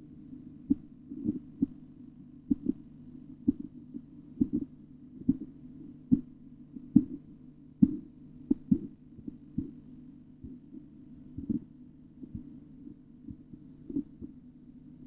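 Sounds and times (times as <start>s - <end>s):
heartbeat thuds through stethoscope: 0.6s - 1.8s, 2.4s - 9.8s, 10.4s - 14.4s.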